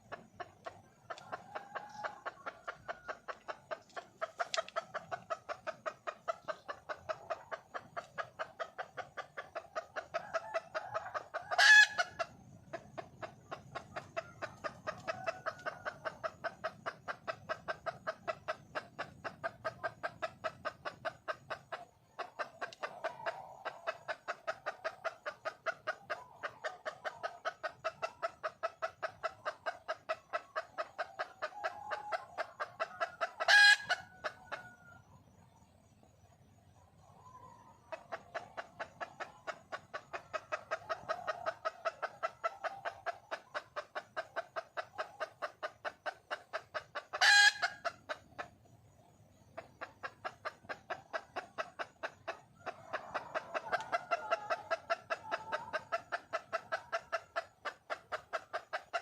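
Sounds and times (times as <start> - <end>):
hen clucking rapidly: 0.0 - 36.3, 36.9 - 59.0.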